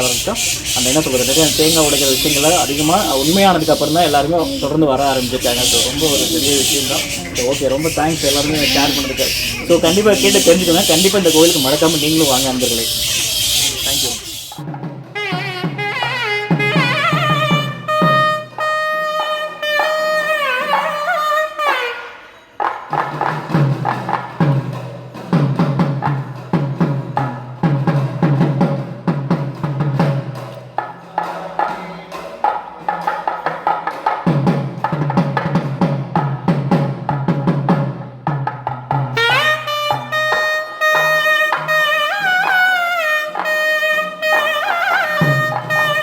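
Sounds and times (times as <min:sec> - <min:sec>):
wind instrument melody: 0:00.0 - 0:22.6, 0:39.2 - 0:46.0
drums and percussion rhythm: 0:00.0 - 0:46.0.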